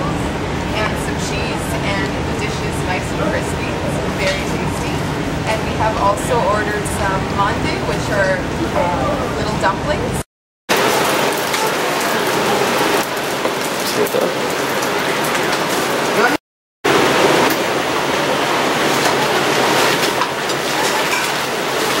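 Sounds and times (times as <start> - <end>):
rice sizzling in hot pot: 10.7 - 16.3, 16.9 - 22.0.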